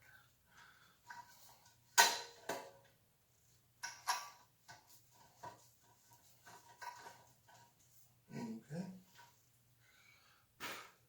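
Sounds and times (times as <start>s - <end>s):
metal bicycle parts clinking: 3.8s - 7.7s.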